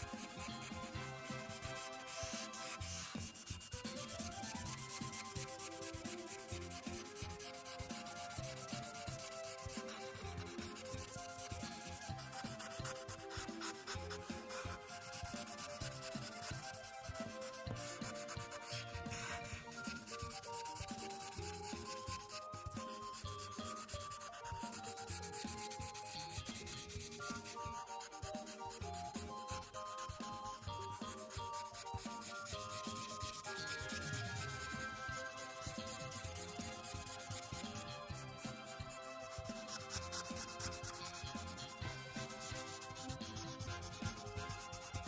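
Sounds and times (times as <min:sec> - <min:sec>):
marker scratching on paper: 0:00.0 - 0:45.0
soft background tune: 0:00.0 - 0:45.0.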